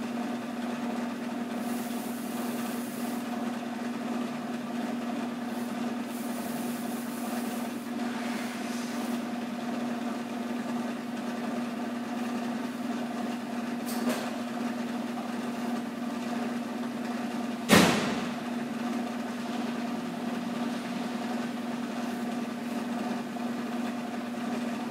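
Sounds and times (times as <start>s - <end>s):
engine mechanical hum: 19.2s - 23.3s.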